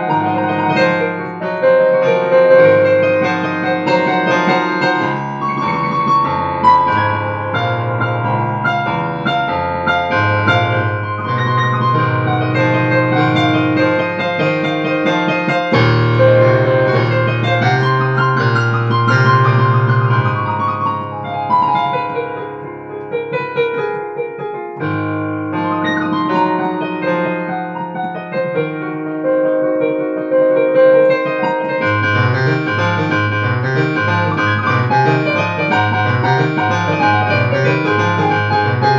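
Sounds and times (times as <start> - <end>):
piano music: 0.0 - 38.9.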